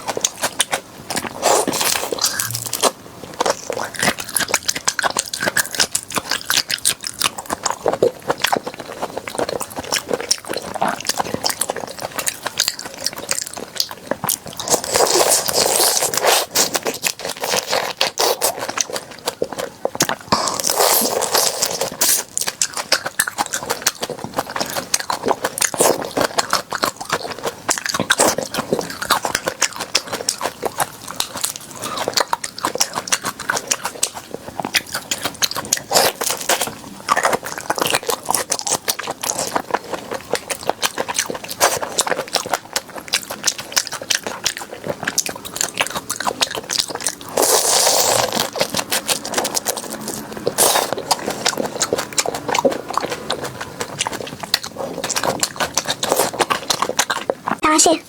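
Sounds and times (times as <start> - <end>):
chewing crunchy food: 0.0 - 58.0.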